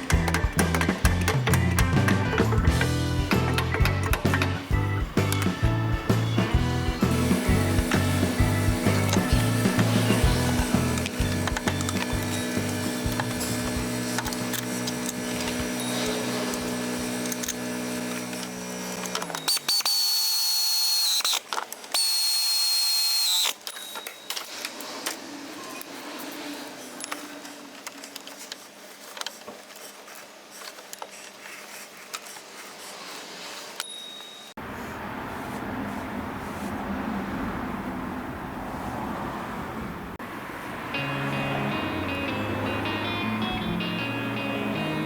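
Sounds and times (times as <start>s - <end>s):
power tool whining: 0.0s - 28.1s.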